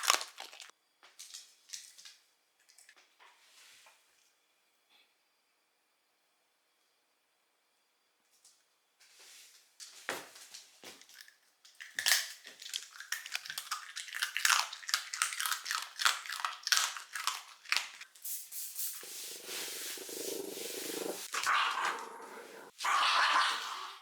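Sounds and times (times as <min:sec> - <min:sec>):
dog crunching hard snack: 0:00.0 - 0:01.9, 0:11.0 - 0:18.0.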